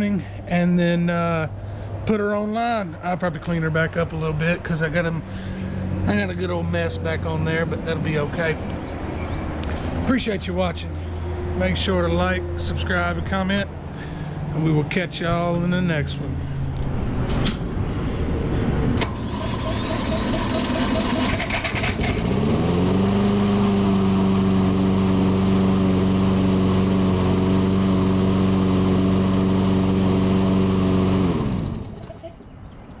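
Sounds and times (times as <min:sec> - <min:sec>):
engine speeding up and stopping: 0:17.0 - 0:32.3.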